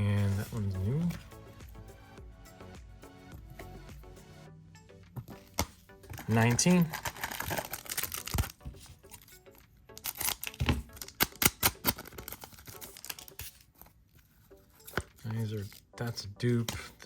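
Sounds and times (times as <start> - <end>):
cards rustling: 0.0 - 1.4, 5.2 - 17.0
background music: 0.0 - 17.0
wrapper tearing and crinkling: 6.1 - 9.2, 9.9 - 13.7.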